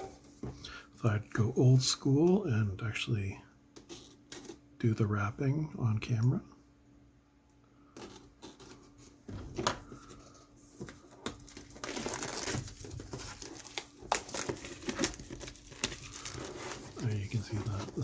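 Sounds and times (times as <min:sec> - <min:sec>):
plastic shrink-wrap crinkling: 0:09.8 - 0:18.0.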